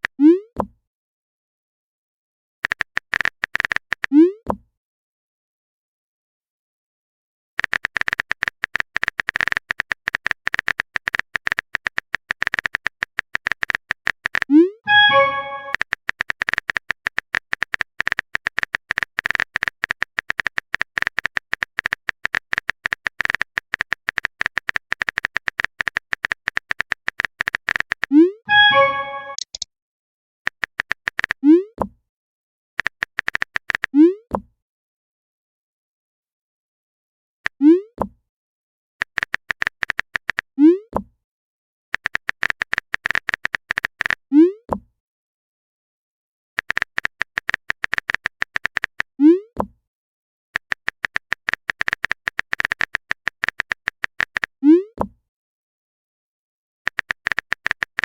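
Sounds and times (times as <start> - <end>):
keyboard typing clicks: 2.6 - 4.1, 7.6 - 29.7, 30.5 - 31.4, 32.8 - 33.9, 39.0 - 40.4, 42.0 - 44.2, 46.6 - 49.0, 50.6 - 54.5, 56.9 - 58.0
message sent bloop: 14.9 - 15.8, 28.5 - 29.6.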